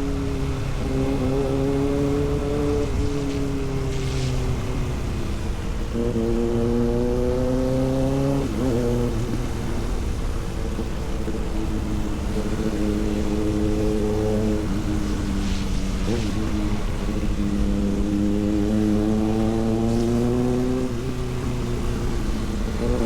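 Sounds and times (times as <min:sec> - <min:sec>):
road rumble: 0:00.0 - 0:23.0
vehicle engine running: 0:00.0 - 0:23.0
wind: 0:00.0 - 0:23.0.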